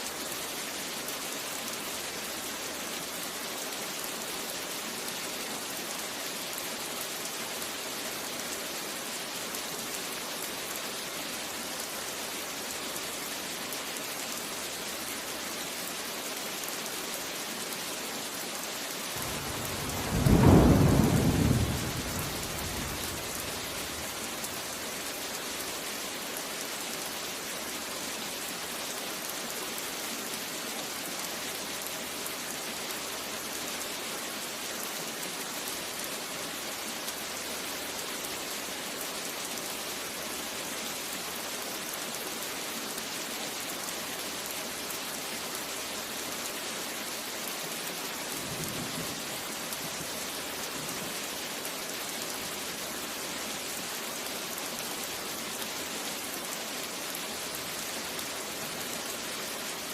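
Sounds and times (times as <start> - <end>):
steady rain falling: 0.0 - 59.9
thunder rumble: 19.2 - 24.3.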